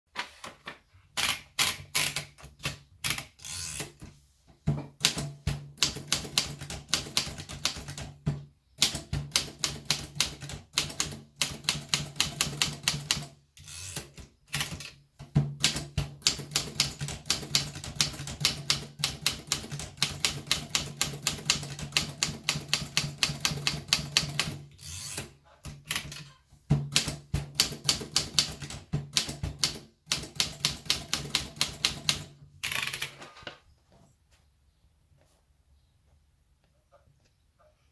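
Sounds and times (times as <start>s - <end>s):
typewriter keystrokes: 5.0s - 8.0s, 8.8s - 13.3s, 15.6s - 24.6s, 26.9s - 33.2s.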